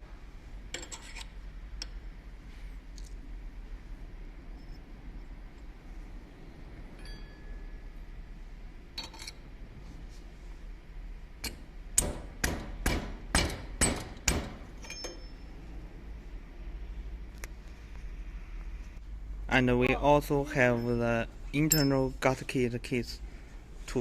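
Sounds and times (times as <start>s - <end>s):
sharp metal knocks: 11.4s - 15.4s.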